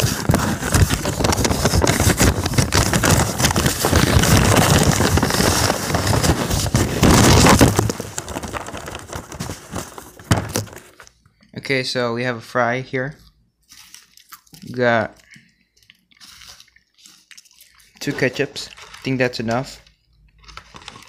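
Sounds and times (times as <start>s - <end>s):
paper packaging rustling: 0.0s - 11.2s, 16.2s - 21.0s.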